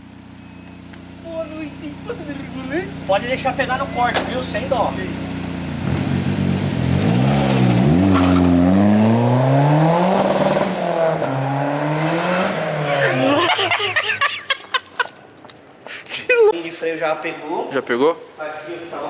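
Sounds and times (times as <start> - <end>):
car engine accelerating hard: 1.5 - 14.0.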